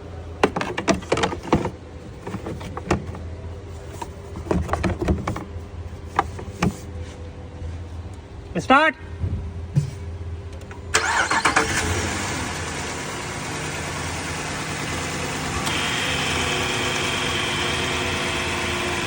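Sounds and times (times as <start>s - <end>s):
car engine idling: 10.3s - 19.0s
car engine starting: 10.6s - 19.0s.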